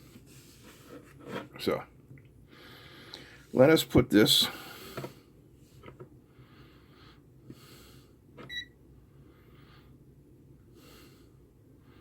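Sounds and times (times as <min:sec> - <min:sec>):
faint breathing: 0:02.4 - 0:03.6, 0:04.4 - 0:08.2, 0:09.1 - 0:10.1, 0:10.7 - 0:12.0.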